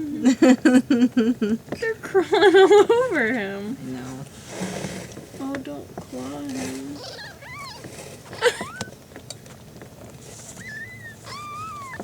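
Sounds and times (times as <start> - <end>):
kittens mewing: 6.9 - 9.0, 10.5 - 12.0.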